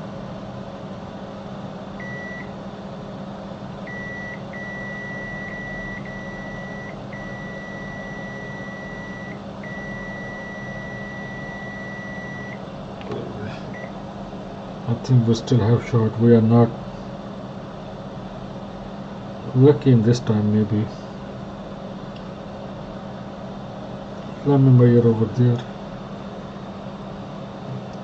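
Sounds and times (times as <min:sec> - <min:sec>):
multimeter continuity beeps: 0:02.0 - 0:02.5, 0:03.9 - 0:12.6.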